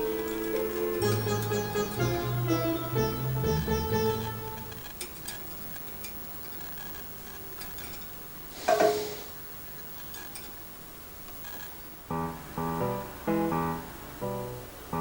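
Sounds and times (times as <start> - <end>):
background music: 0.0 - 4.9, 12.1 - 15.0.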